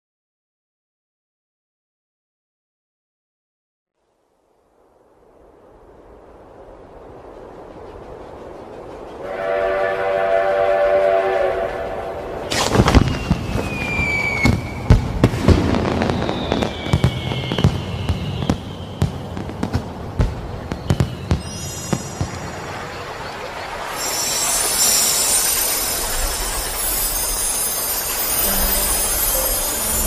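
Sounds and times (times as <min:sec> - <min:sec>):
falling whistles: 0:09.2 - 0:19.7, 0:20.5 - 0:30.0
firework rising rush: 0:12.2 - 0:30.0
firework bangs: 0:12.5 - 0:23.4
whistle-like chord: 0:23.8 - 0:30.0.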